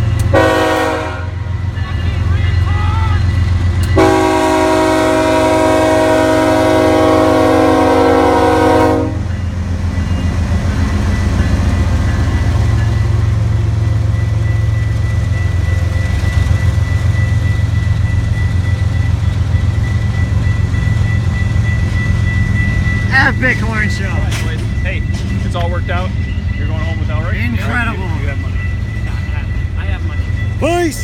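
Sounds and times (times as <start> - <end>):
train rumbling: 0.0 - 31.0
locomotive air horn chord: 0.3 - 1.5, 4.0 - 9.3
thin high tone: 19.8 - 31.0.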